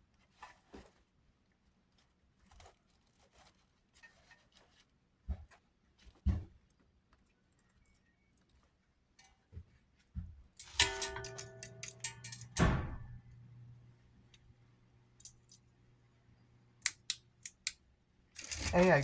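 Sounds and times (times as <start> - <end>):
short metallic ringing: 10.6 - 13.8
clicks: 10.6 - 15.7, 16.8 - 17.8
ceiling fan motor humming: 10.6 - 17.8, 18.4 - 19.0
thud: 12.5 - 13.8.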